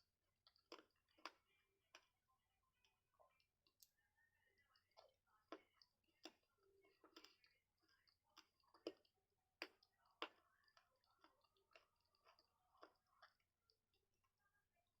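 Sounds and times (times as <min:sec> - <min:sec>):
crunchy chewing: 0:05.0 - 0:13.8.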